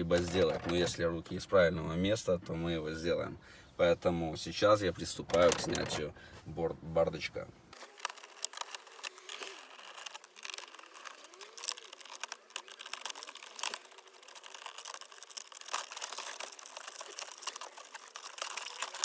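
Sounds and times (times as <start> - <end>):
hard plastic parts clicking: 0.0 - 1.0, 5.2 - 6.2, 7.7 - 19.0
tool being handled: 7.7 - 19.0.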